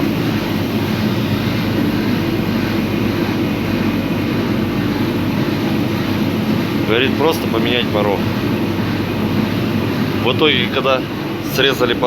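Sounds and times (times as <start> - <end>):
steady low drone: 0.0 - 12.0.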